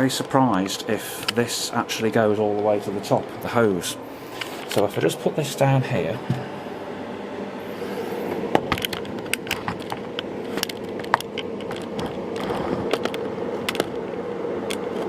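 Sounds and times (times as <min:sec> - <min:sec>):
steady hum: 0:00.0 - 0:15.0
plastic clicks and rattles: 0:08.7 - 0:14.0.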